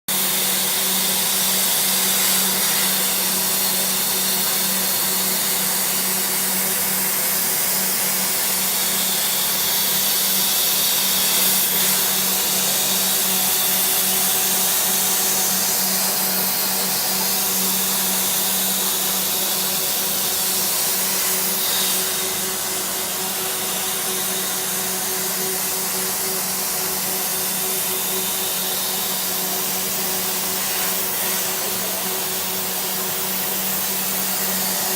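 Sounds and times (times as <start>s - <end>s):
metal-cutting machine hissing: 0.1s - 34.9s.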